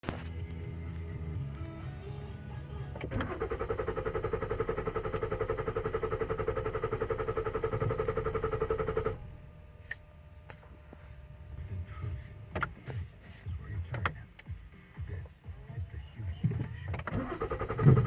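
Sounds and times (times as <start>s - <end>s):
car engine cranking: 2.9s - 10.7s, 16.7s - 18.0s.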